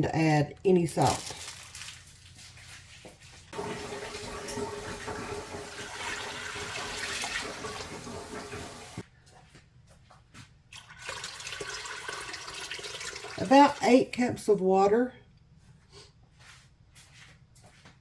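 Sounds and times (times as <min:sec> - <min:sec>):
water pouring into a pot: 0:03.6 - 0:09.0, 0:10.8 - 0:13.9.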